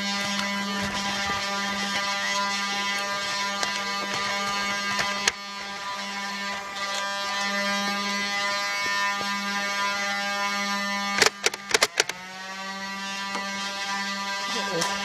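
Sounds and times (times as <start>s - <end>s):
toy blaster motor buzzing: 0.0s - 15.0s
sharp clicks: 11.1s - 12.2s.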